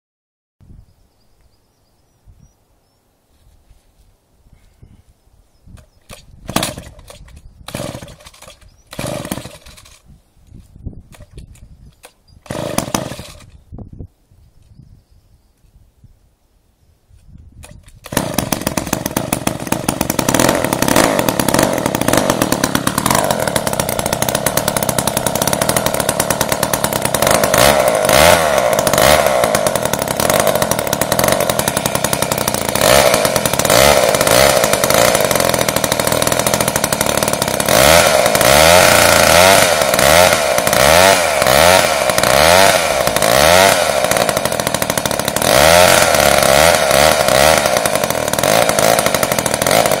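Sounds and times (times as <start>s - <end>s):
chainsaw engine revving: 6.1s - 10.1s, 12.0s - 13.6s, 17.6s - 50.0s.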